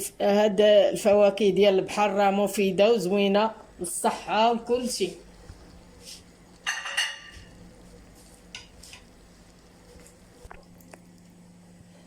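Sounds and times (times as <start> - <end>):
utensil clattering against dish: 6.7 - 7.4.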